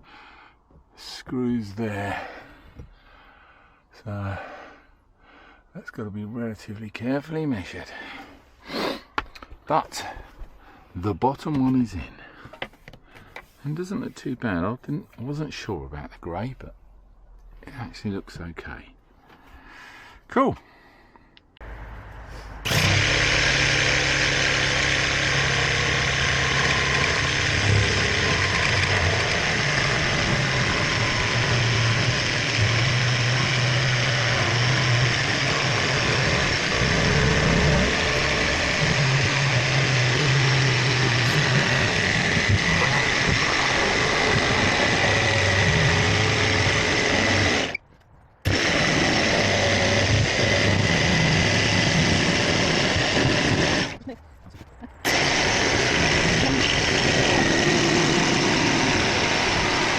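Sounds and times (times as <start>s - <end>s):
power tool motor running: 22.6s - 47.8s, 48.5s - 54.0s, 55.0s - 59.9s.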